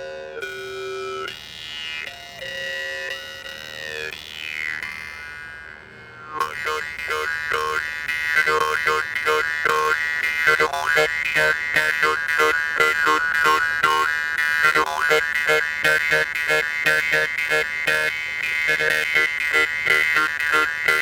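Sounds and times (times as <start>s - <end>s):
mouth harp twanging: 6.4s - 21.0s.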